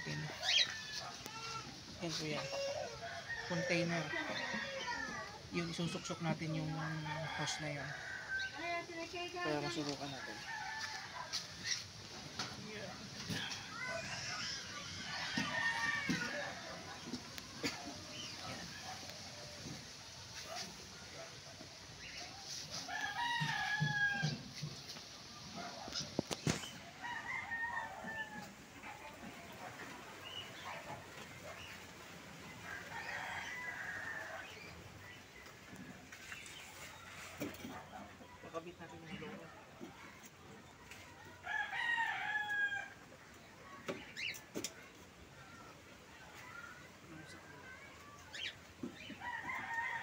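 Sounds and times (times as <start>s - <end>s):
rooster crowing: 6.7s - 8.7s, 10.2s - 11.5s, 13.3s - 17.1s, 22.7s - 24.5s, 27.0s - 29.1s, 32.6s - 34.7s, 41.4s - 43.0s, 49.2s - 50.0s.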